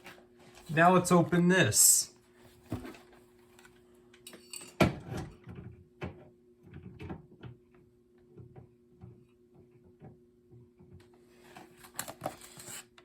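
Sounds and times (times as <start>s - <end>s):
packaging clicks and scrapes: 11.5s - 13.0s.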